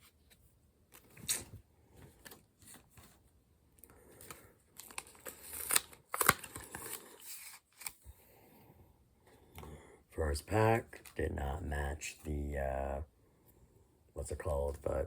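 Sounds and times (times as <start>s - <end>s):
foil packs crinkling and rustling: 4.2s - 8.0s.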